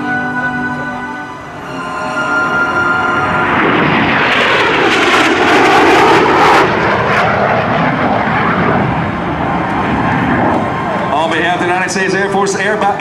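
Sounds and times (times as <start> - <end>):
background music: 0.0 - 4.1
jet engines flyby: 0.7 - 13.0.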